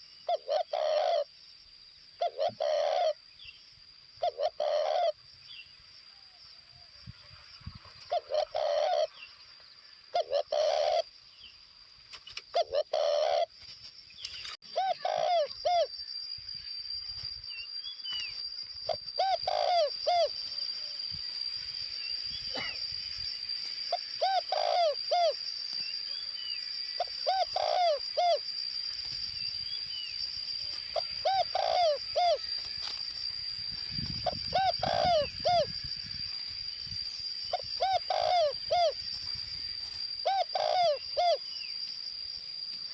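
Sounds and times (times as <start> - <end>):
dove cooing: 0.0 - 1.3, 2.2 - 3.2, 4.2 - 5.2, 8.1 - 9.1, 10.1 - 11.1, 12.5 - 13.5, 14.7 - 15.9, 18.9 - 20.4, 23.9 - 25.4, 27.0 - 28.4, 30.9 - 32.5, 34.2 - 35.8, 37.5 - 39.0, 40.2 - 41.4.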